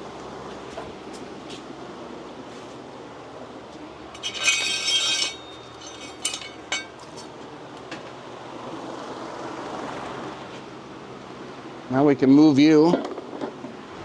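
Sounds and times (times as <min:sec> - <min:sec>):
metal clinks and knocks: 0:04.2 - 0:07.3
metal objects clattering: 0:04.2 - 0:07.3.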